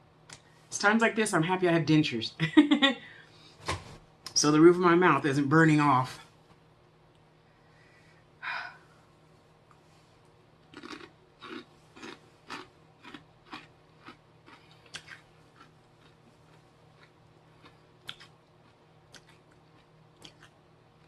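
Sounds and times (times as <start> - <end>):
person chewing crunchy chips: 10.6 - 21.0.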